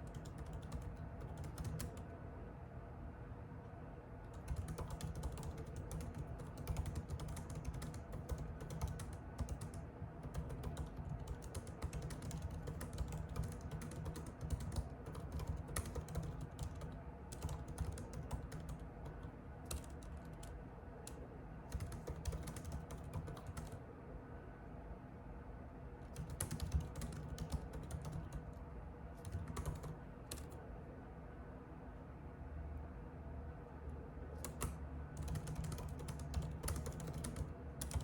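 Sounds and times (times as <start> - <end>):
typing on computer keyboard: 0.0 - 2.1, 4.3 - 23.8, 26.1 - 28.6, 29.2 - 30.6, 34.4 - 38.0.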